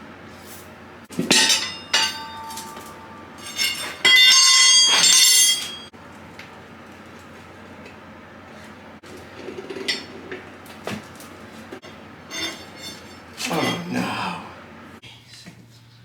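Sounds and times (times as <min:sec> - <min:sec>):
tire irons clanking on metal rim: 0:01.1 - 0:06.0, 0:09.1 - 0:13.9
ringing metal scrape: 0:01.3 - 0:05.9, 0:11.8 - 0:13.9.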